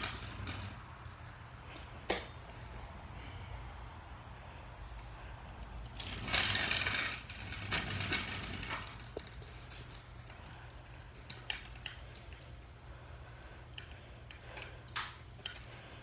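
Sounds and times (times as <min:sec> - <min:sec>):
jack metallic rattling: 0:05.8 - 0:12.6.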